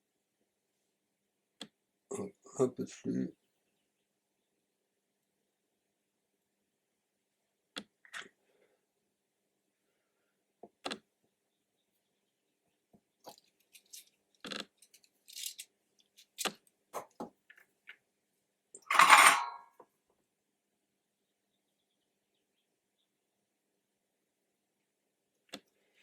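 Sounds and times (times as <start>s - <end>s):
tools and wires clicking: 13.3s - 17.1s, 18.8s - 19.6s
scraping rustling noise: 18.8s - 19.6s.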